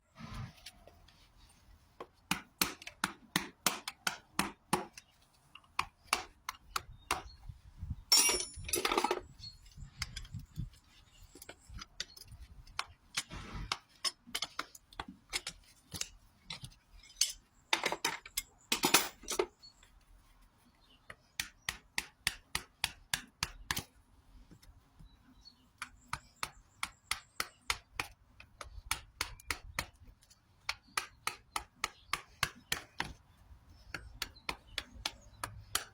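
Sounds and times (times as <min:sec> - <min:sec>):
scraping strokes on a hoof: 0:00.0 - 0:35.9
sharp taps on a hoof: 0:25.8 - 0:33.2, 0:33.8 - 0:35.9.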